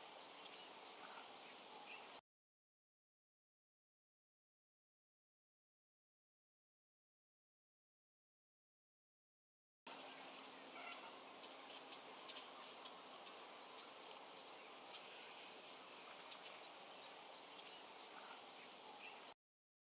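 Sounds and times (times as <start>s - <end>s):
kingfisher shrill whistled calls: 10.6s - 12.3s.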